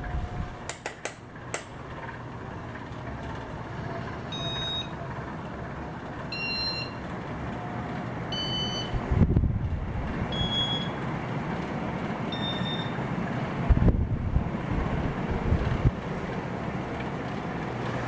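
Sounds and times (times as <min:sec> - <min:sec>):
ceiling fans humming: 0:00.0 - 0:18.0
sharp clicks: 0:00.7 - 0:01.7.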